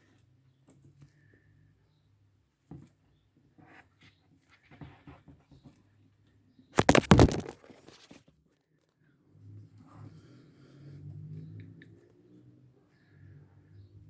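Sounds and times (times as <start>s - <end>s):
skate buckle clicks and knocks: 6.8s - 8.1s.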